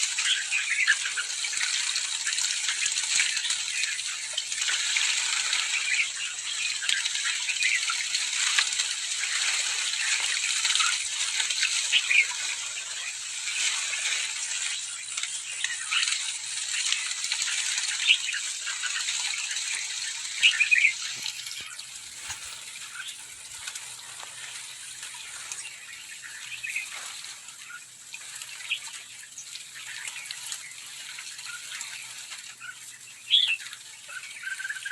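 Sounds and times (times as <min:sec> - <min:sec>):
flock of birds chirping: 0:05.7 - 0:27.9
water splashing: 0:08.4 - 0:14.5, 0:19.0 - 0:25.5
wings fluttering: 0:09.3 - 0:13.9, 0:20.0 - 0:25.2.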